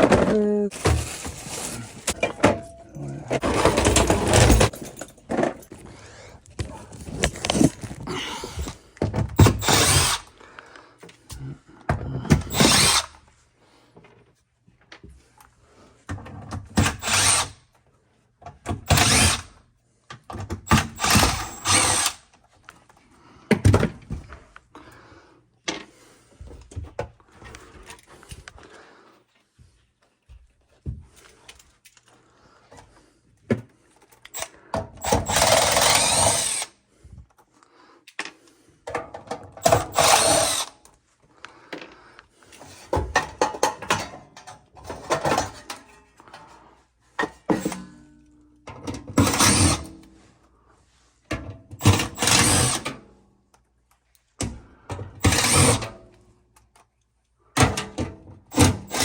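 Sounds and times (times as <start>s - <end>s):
power drill running: 9.4s - 10.3s, 12.5s - 13.1s, 16.8s - 17.6s, 18.9s - 19.5s, 20.7s - 22.2s, 34.4s - 36.7s, 39.6s - 40.8s, 49.2s - 49.9s, 51.8s - 52.9s, 55.2s - 55.8s, 58.5s - 59.0s.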